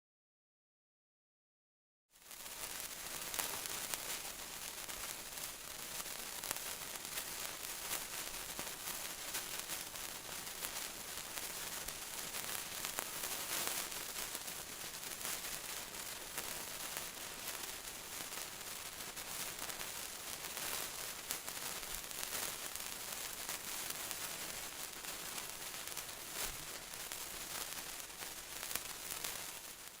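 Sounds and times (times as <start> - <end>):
sparkler pops: 2.2 - 30.0
sparklers fizzing and crackling: 2.2 - 30.0.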